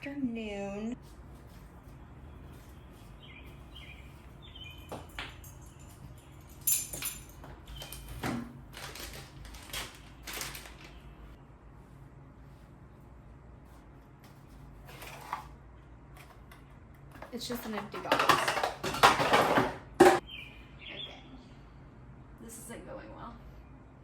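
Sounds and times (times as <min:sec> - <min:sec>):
rustles and scrapes of clutter: 0:01.0 - 0:20.2.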